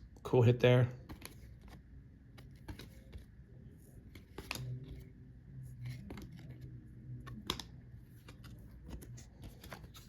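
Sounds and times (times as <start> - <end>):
cards sliding: 1.0 - 3.3, 7.3 - 10.0.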